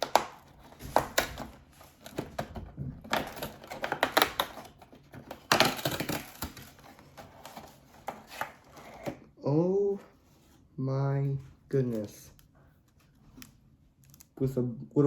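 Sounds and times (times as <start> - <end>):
cardboard and plastic packaging crinkling: 0.0 - 9.2.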